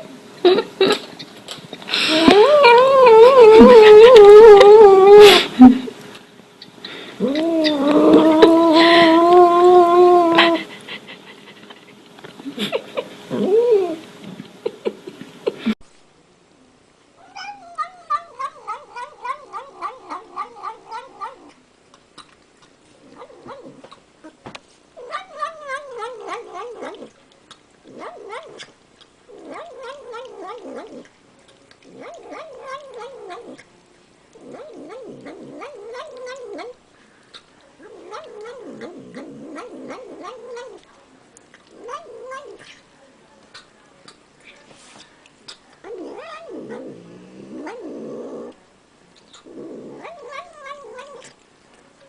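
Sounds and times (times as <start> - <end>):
cat yowling: 2.1 - 5.4, 7.2 - 10.5, 17.2 - 21.5.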